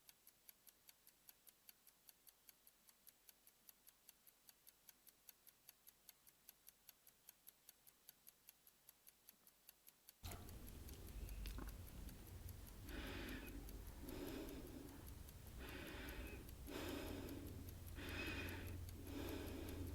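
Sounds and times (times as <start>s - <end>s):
clock ticking: 0.0s - 19.9s
low background hum: 10.2s - 19.9s
woman breathing quietly: 10.3s - 19.9s.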